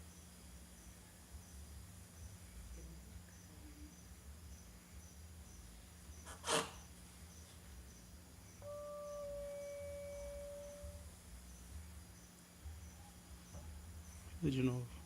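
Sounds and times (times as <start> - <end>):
crickets chirping: 0.0 - 15.0
steady electronic tone: 8.6 - 11.1.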